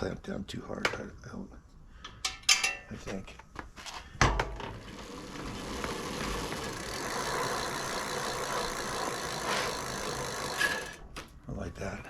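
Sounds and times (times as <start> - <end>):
bike wheel spinning whir: 4.6 - 11.3.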